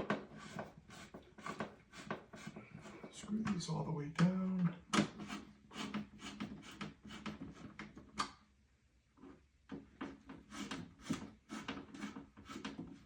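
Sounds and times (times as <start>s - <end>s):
screwdriver turning screws: 4.9s - 7.9s.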